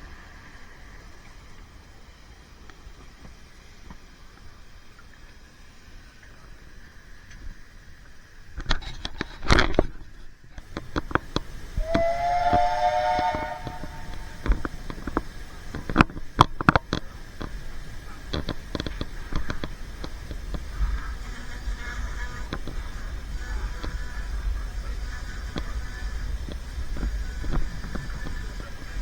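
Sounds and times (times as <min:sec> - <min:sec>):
steam locomotive whistle: 0:11.8 - 0:15.5.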